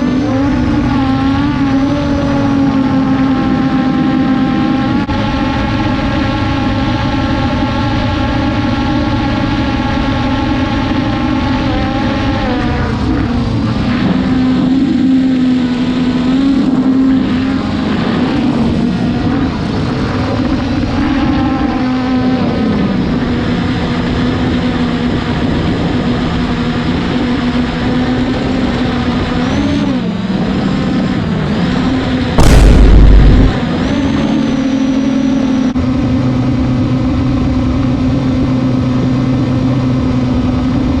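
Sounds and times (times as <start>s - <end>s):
drone propellers humming: 0.0s - 41.0s
very loud rumble: 0.0s - 41.0s
wind noise: 31.8s - 34.4s.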